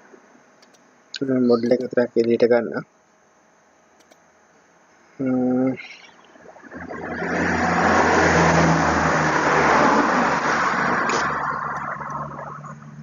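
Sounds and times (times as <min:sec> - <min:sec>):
vehicle engine hum: 0:06.6 - 0:13.0
road noise: 0:06.7 - 0:13.0.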